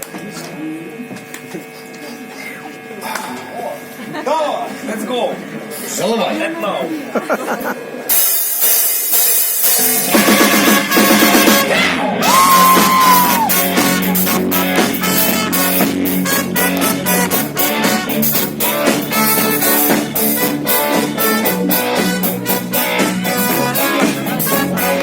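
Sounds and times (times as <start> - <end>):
drum kit beat: 8.1 - 25.0
electric guitar: 9.6 - 25.0
bass line: 10.0 - 25.0.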